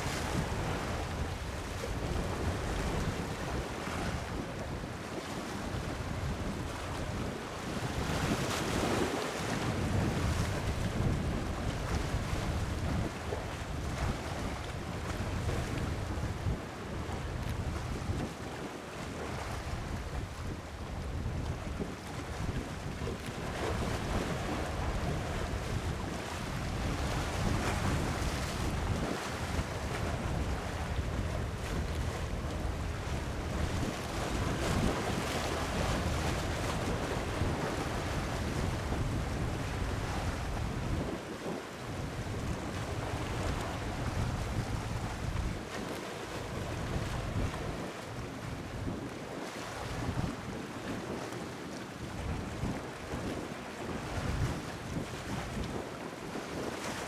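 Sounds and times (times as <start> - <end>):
wind buffeting microphone: 19.3 - 41.2, 41.9 - 45.7.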